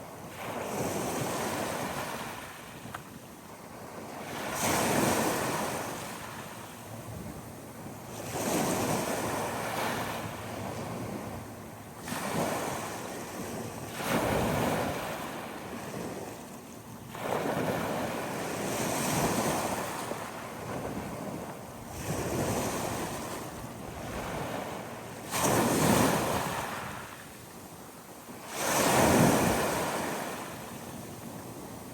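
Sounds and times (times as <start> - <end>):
ocean waves breaking: 28.4 - 31.7.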